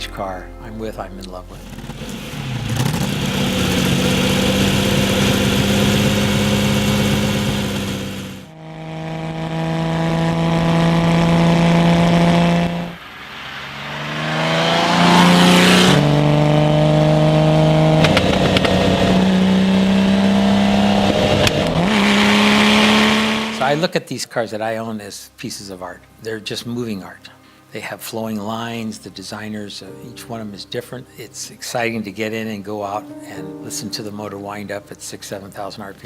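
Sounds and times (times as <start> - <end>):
car engine revving: 1.6 - 23.8.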